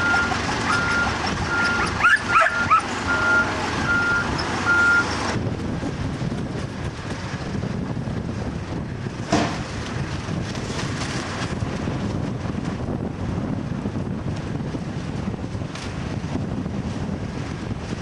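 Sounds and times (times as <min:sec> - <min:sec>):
backup alarm beeping: 0:00.0 - 0:05.1
low engine noise: 0:00.0 - 0:18.0
dog barking: 0:02.0 - 0:02.8.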